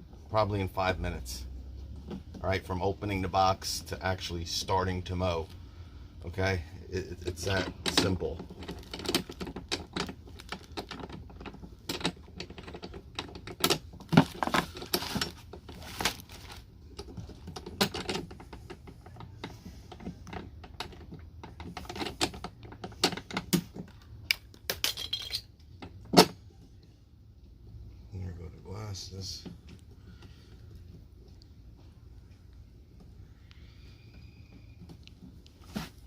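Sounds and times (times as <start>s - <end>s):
plastic and metal parts rattling: 7.1s - 26.4s.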